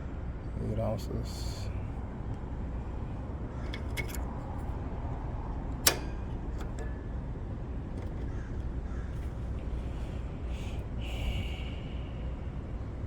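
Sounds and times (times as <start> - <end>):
air conditioner unit humming: 0.0 - 13.0
sharp click: 5.8 - 7.0.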